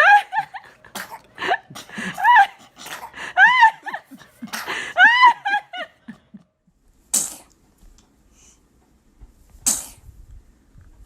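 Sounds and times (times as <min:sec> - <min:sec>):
baby sneezing: 0:07.1 - 0:07.6, 0:09.6 - 0:10.1.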